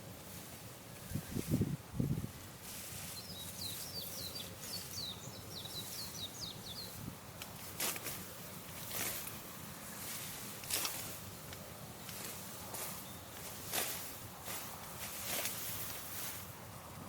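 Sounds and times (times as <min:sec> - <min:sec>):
field background noise: 0:00.0 - 0:17.0
brief rustle: 0:07.4 - 0:09.4.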